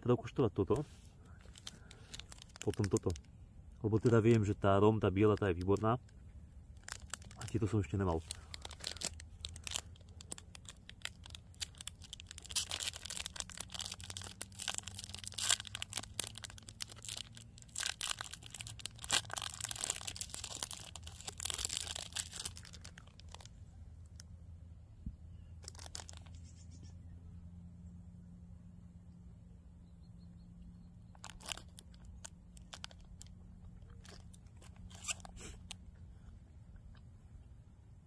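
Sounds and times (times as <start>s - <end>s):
plastic wrapper crinkling and tearing: 0.7s - 24.3s, 25.6s - 26.4s, 31.1s - 35.9s.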